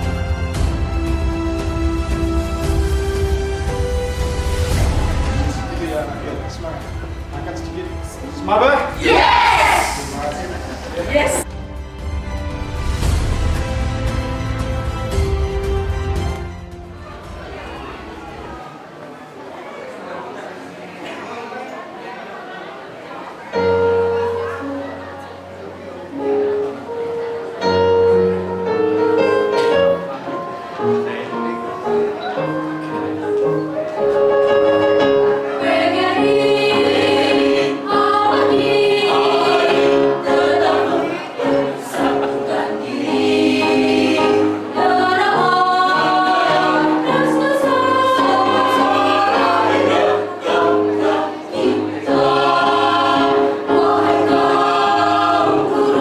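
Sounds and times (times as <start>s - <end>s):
choir singing: 4.4s - 11.5s, 35.2s - 56.0s
musical accompaniment: 23.6s - 56.0s.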